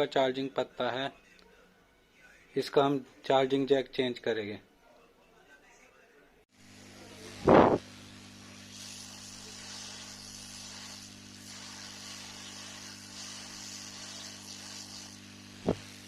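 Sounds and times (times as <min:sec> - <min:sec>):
soft airy hiss: 0:07.0 - 0:16.0.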